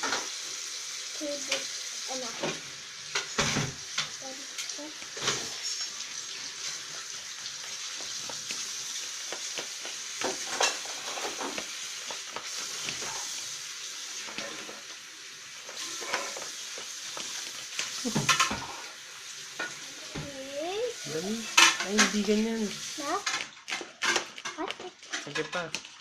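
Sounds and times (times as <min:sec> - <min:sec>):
slime squelching being stirred: 0:04.9 - 0:15.0.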